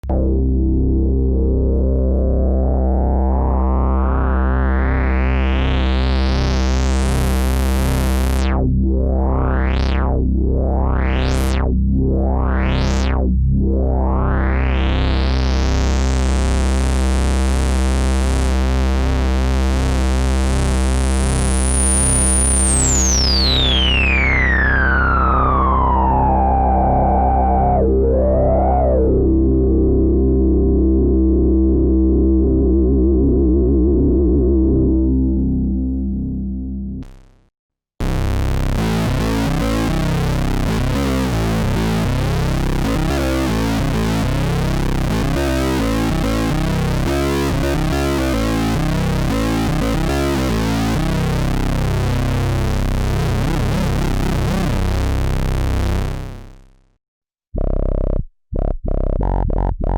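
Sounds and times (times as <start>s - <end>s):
synthesizer bass note filter sweeps: 0.0s - 37.4s, 38.0s - 56.7s, 57.6s - 59.9s.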